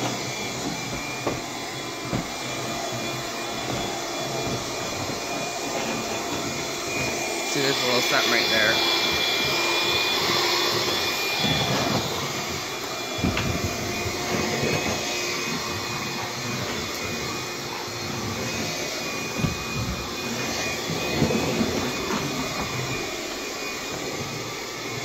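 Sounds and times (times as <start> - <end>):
vacuum cleaner motor hum: 0.0 - 25.0
vacuum head knocking: 18.5 - 24.4.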